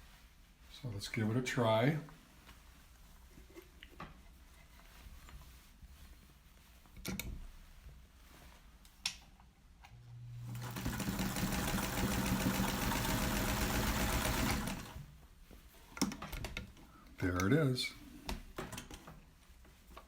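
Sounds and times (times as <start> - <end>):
sewing machine running: 10.4 - 15.0.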